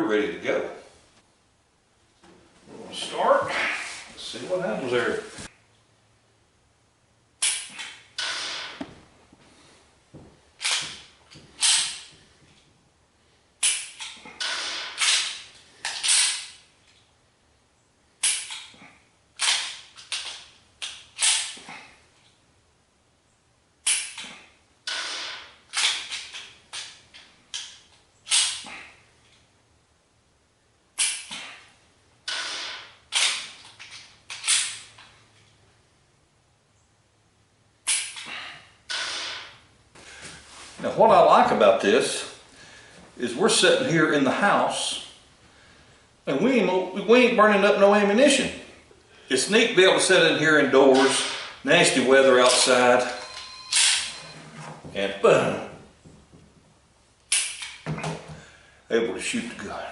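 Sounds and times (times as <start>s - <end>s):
pistol dry-fire pops: 7.4s - 7.9s, 18.2s - 18.7s, 23.8s - 24.3s, 31.0s - 31.4s.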